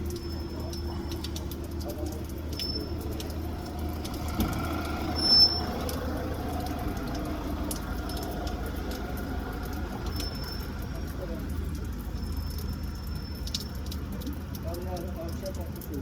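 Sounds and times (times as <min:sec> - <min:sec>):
low rumble of engine or traffic: 0:00.0 - 0:16.0
sharp high squeak: 0:05.1 - 0:05.8.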